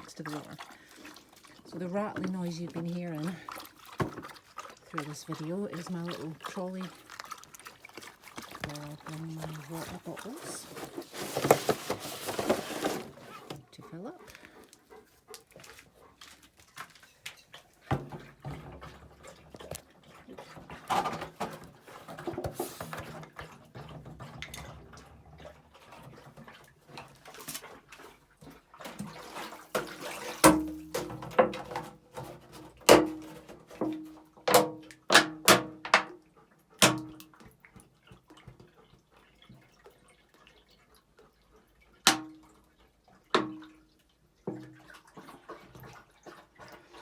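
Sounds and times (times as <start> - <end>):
water splashing and dripping: 0.0 - 47.0
plastic bottles knocking: 8.4 - 13.6, 32.8 - 36.1.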